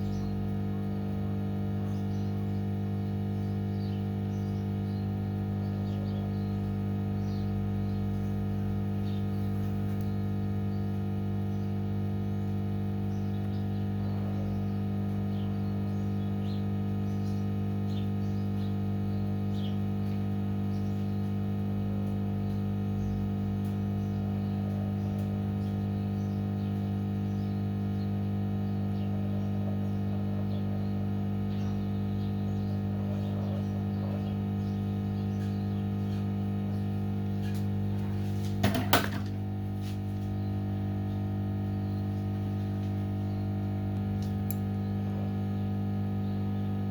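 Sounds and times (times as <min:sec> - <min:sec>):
electrical hum: 0:00.0 - 0:46.9.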